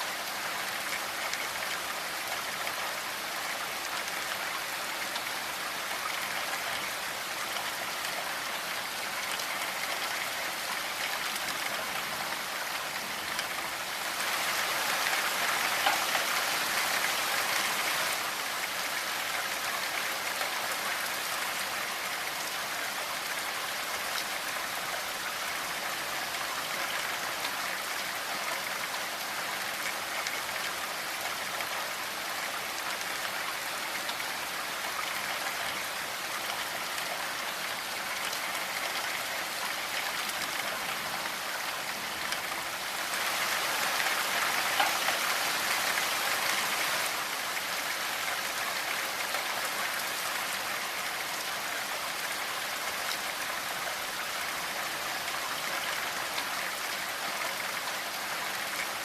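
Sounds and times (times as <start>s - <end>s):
steady rainfall: 0.0s - 59.0s.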